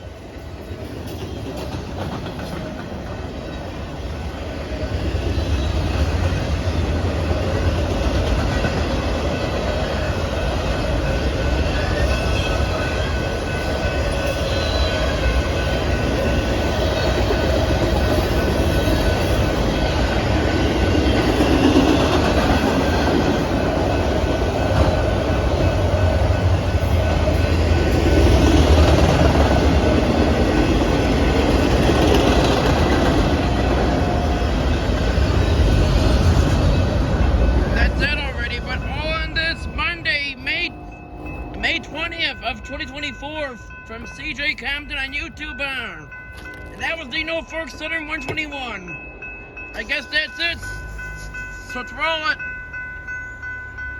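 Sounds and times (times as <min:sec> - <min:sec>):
train wheels rumbling on rail: 0:00.0 - 0:53.9
high-pitched ringing tones: 0:33.5 - 0:53.9.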